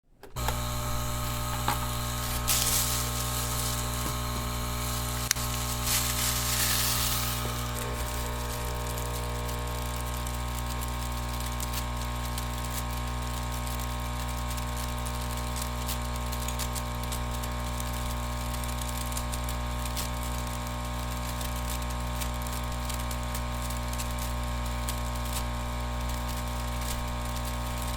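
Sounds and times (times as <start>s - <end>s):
air pump motor hum: 0.2s - 13.0s
vaporizer motor hum: 0.2s - 27.9s
faint irregular ticks: 0.4s - 27.9s
rushing hiss of air: 0.8s - 8.7s.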